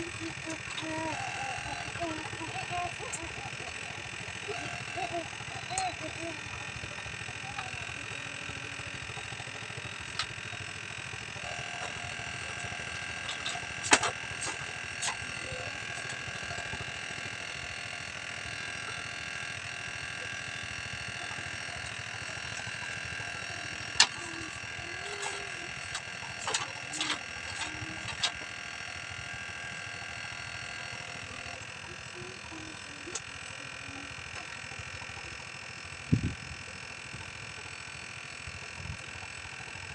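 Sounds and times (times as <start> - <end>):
mechanical hum: 0.0 - 39.9
sharp clicks and knocks: 13.3 - 15.2.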